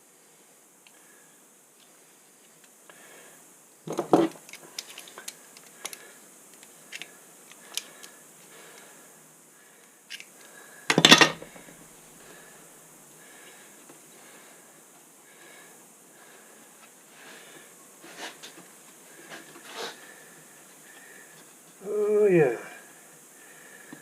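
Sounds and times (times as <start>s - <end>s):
clatter of hard parts: 10.9s - 11.5s.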